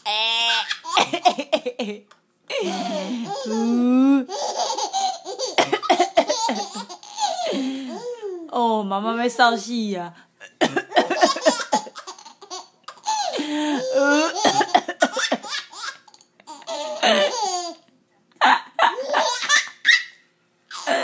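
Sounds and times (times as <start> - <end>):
baby laughing: 0.0 - 8.5, 10.9 - 17.8, 18.4 - 21.0
person coughing: 1.0 - 2.0, 5.6 - 6.5, 10.4 - 12.0, 13.4 - 15.5, 17.0 - 17.4.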